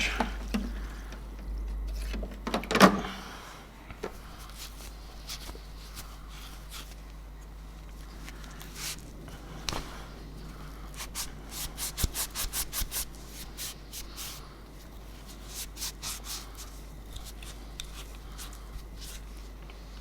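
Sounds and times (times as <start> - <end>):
steady low hum: 0.0 - 20.0
knocks and clicks of handled parts: 0.2 - 3.0.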